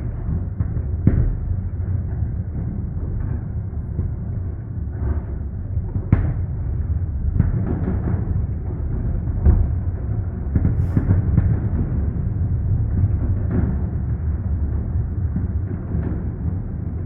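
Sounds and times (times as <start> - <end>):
fireworks rumbling: 0.0 - 17.0
faint firework pops: 6.1 - 6.5, 10.5 - 12.3
sharp firework bangs: 10.5 - 16.9.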